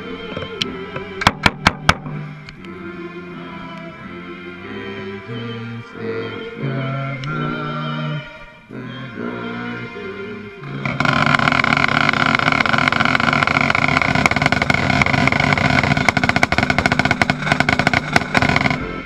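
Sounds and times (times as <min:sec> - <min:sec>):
snare drum strokes and rolls: 0:01.2 - 0:02.2, 0:10.6 - 0:19.0.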